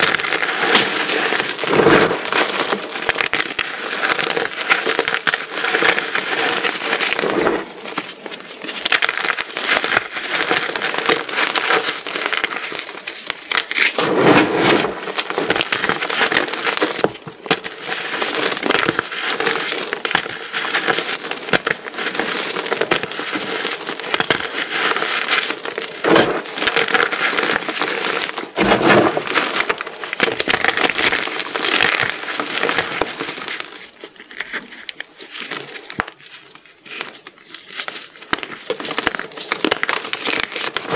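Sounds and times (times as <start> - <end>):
chalk crunching and crackling: 0.0 - 40.9.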